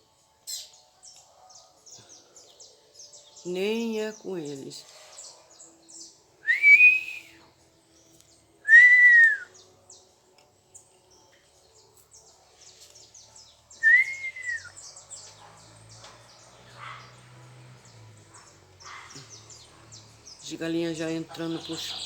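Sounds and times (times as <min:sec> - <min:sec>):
small birds chirping: 0:00.0 - 0:22.0
loud rising and falling whistles: 0:06.4 - 0:07.4, 0:08.7 - 0:09.5, 0:13.8 - 0:14.8.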